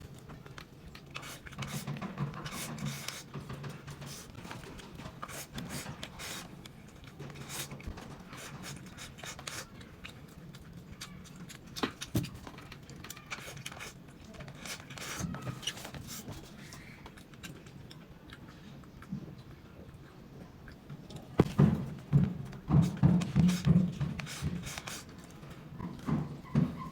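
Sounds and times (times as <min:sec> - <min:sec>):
chewing with mouth clicks: 0:00.0 - 0:03.2, 0:04.0 - 0:21.4.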